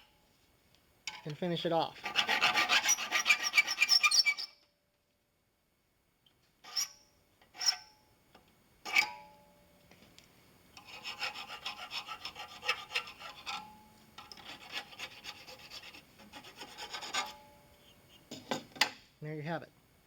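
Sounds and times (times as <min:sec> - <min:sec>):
file rasping on brass: 0:02.0 - 0:04.4, 0:10.8 - 0:17.5.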